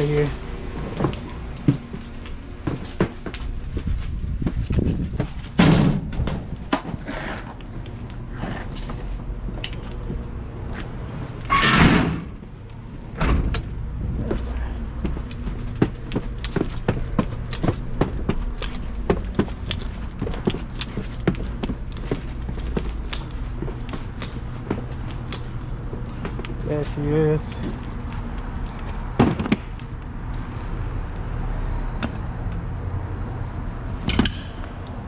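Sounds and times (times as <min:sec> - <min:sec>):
low hum: 0:00.0 - 0:35.0
footsteps: 0:00.8 - 0:11.5, 0:14.0 - 0:30.7
door banging shut: 0:05.6 - 0:06.5, 0:11.5 - 0:12.4, 0:13.2 - 0:13.6.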